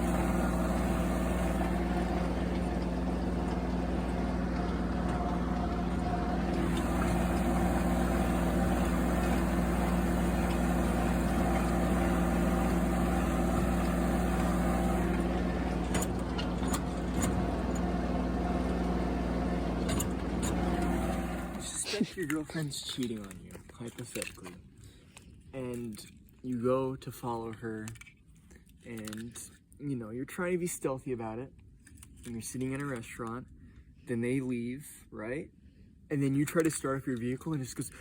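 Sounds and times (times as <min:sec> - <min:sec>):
engine idling: 0:00.0 - 0:22.1.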